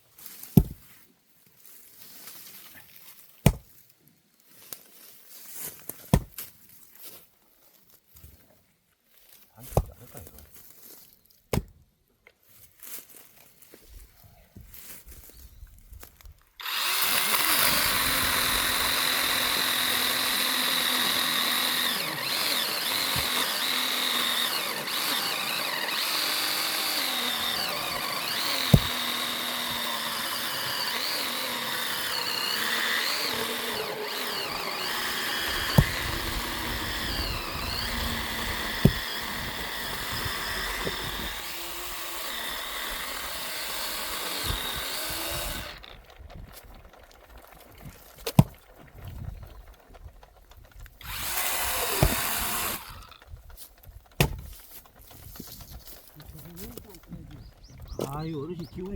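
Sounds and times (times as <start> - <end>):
chainsaw cutting wood: 0.5 - 0.8, 3.4 - 3.7, 6.1 - 6.4, 16.6 - 58.9.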